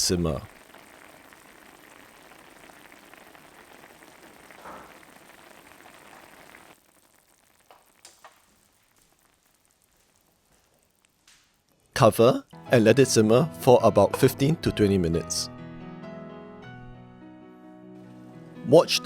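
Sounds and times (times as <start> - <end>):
liquid bubbling and sizzling: 0.0 - 11.9.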